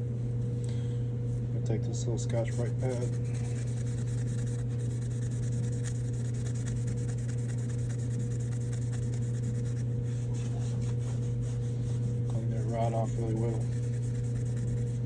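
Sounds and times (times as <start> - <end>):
steady low hum: 0.0 - 15.0
pad scrubbing metal rod: 7.4 - 15.0.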